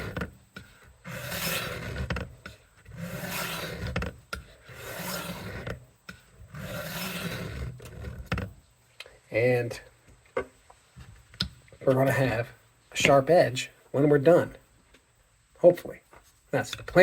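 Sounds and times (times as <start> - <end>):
knife scraping on sharpening stone: 1.1 - 2.2, 3.0 - 4.0, 4.6 - 5.8, 6.6 - 8.0.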